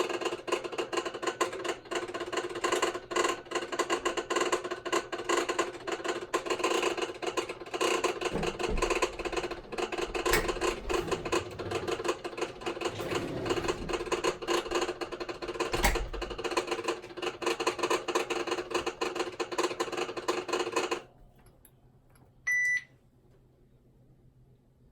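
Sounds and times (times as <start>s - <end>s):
washing machine rattling: 0.2s - 21.1s
short electronic beep: 22.5s - 22.9s.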